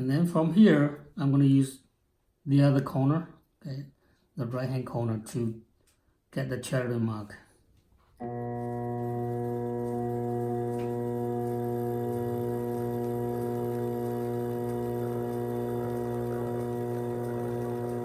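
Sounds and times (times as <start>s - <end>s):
pottery wheel motor humming: 8.2s - 18.0s.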